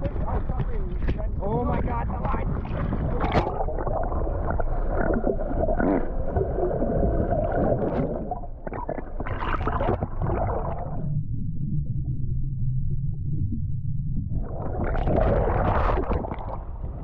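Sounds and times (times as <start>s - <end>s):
wind: 0.0s - 3.6s
water noise: 0.0s - 17.0s.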